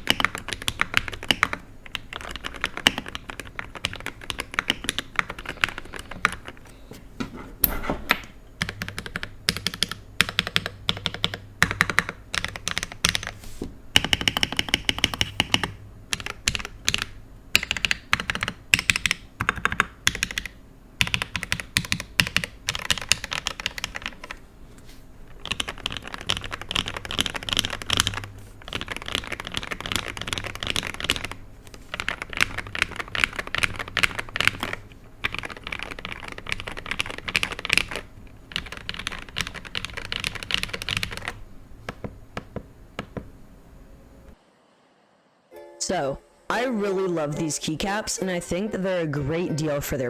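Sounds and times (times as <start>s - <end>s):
mechanical keyboard typing: 0.0s - 6.6s, 8.6s - 13.4s, 14.0s - 24.4s, 25.3s - 43.3s.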